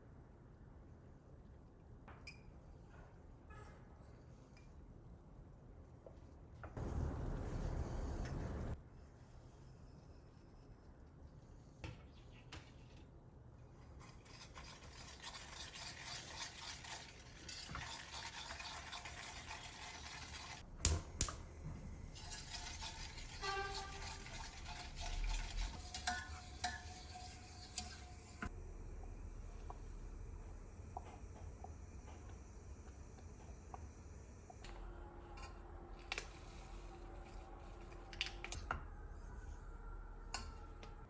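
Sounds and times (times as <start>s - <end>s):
spoon stirring and scraping in bowl: 13.8s - 20.6s, 22.0s - 28.5s.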